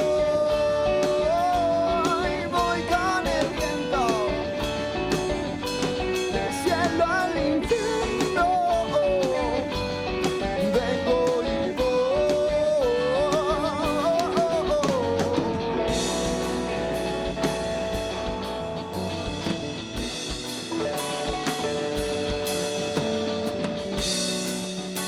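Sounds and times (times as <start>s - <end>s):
rock band playing: 0.0s - 25.0s.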